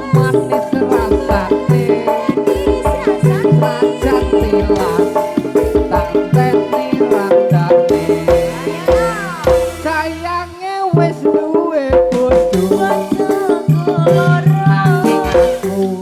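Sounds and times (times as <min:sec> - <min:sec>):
gliding melody line: 0:00.0 - 0:11.8
fast drum and percussion beat: 0:00.0 - 0:16.0.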